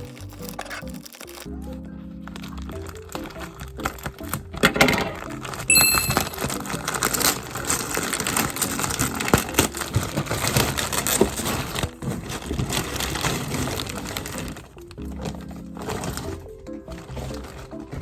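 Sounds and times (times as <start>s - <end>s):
plastic packaging crinkling: 0.0s - 1.5s, 6.4s - 18.0s.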